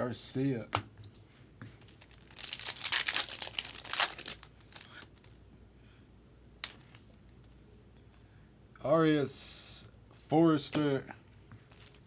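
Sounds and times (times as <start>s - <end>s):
foil wrapper crinkling and tearing: 1.9s - 5.3s, 11.7s - 12.0s.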